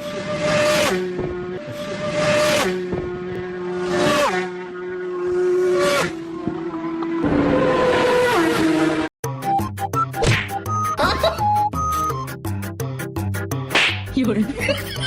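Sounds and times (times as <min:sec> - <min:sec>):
vehicle passing by: 0:00.0 - 0:09.1.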